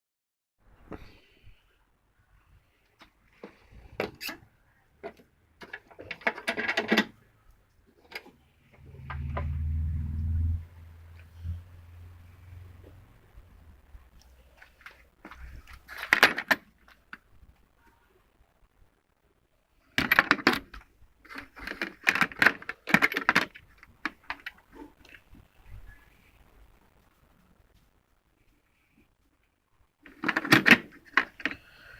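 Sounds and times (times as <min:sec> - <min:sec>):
low rumble: 0:08.8 - 0:14.1.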